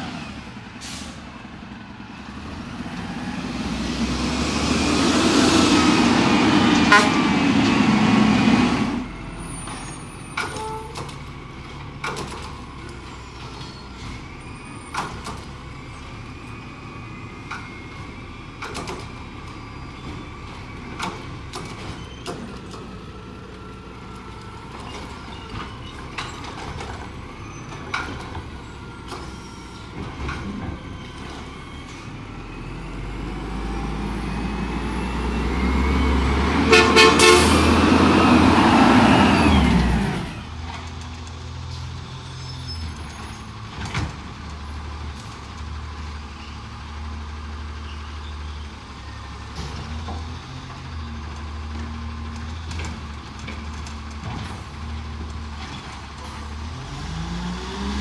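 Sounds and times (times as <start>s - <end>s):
garbage truck engine: 0.0s - 58.0s
garbage truck engine running steadily: 0.0s - 58.0s
short horn honk: 6.8s - 7.4s, 36.6s - 37.8s.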